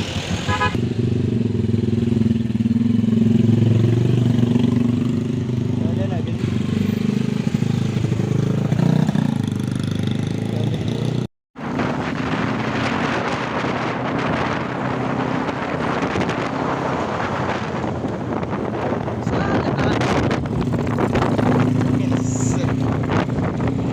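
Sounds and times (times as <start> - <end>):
road noise: 0.0 - 23.9
rushing wind: 0.0 - 23.9.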